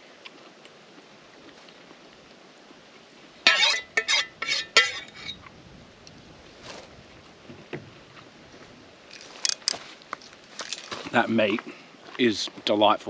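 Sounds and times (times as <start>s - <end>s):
metal cutlery clinking on dish: 3.5s - 5.4s.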